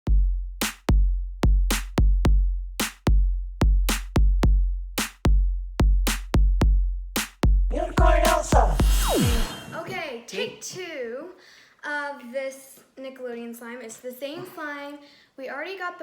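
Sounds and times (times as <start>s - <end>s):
deep bass kicks: 0.1s - 9.5s
crisp snare hits: 0.6s - 0.9s, 5.0s - 5.2s.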